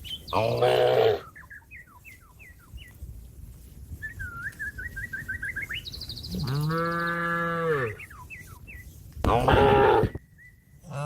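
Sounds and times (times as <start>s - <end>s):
small bird singing: 0.0s - 3.1s, 3.9s - 9.0s
cow mooing: 0.4s - 1.2s, 6.3s - 8.0s, 9.3s - 10.2s.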